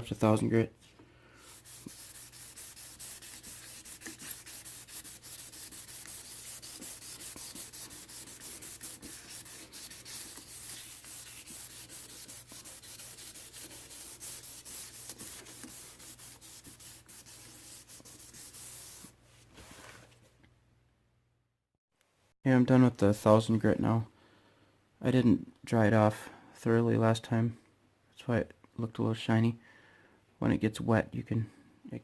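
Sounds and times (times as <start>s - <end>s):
wet-sanding plastic rasp: 1.4s - 19.1s.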